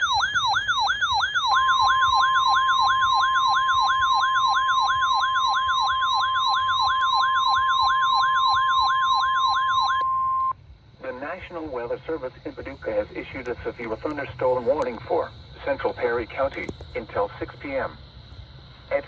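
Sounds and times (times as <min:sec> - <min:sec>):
electronic siren warbling: 0:00.0 - 0:10.5
steady alarm tone: 0:00.0 - 0:10.6.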